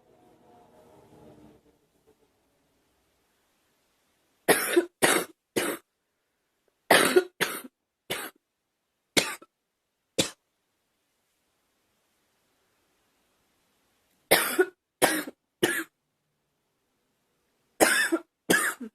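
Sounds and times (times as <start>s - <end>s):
girl coughing: 4.5s - 5.8s, 6.9s - 8.4s, 14.3s - 15.9s, 17.8s - 18.9s.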